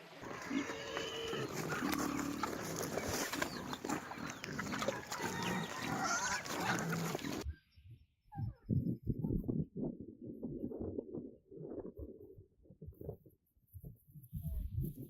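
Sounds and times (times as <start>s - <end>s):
farm animals calling: 0.0s - 7.5s.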